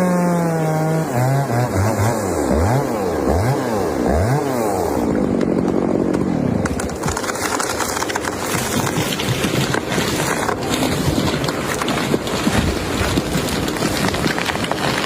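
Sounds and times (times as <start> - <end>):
chainsaw engine revving: 0.0 - 15.0
cracks and snaps: 5.3 - 15.0.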